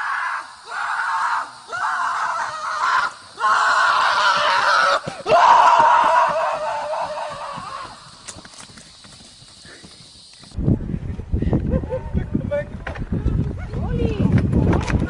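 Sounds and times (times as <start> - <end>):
person screaming: 0.0 - 8.0.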